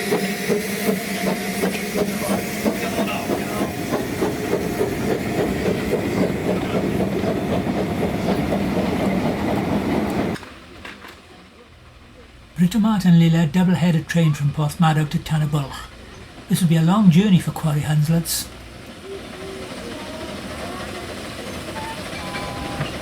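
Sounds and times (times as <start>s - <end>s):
train wheels clickety-clack: 0.0s - 11.2s, 16.1s - 23.0s.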